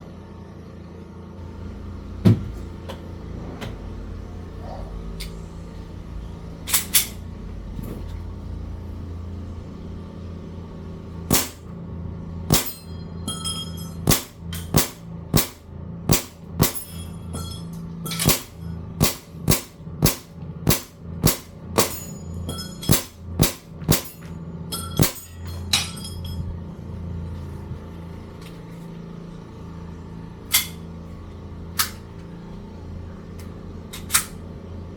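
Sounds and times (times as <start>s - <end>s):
low hum: 1.4s - 34.9s
airsoft pistol shots: 11.3s - 11.6s, 12.5s - 12.8s, 14.1s - 16.8s, 18.3s - 22.1s.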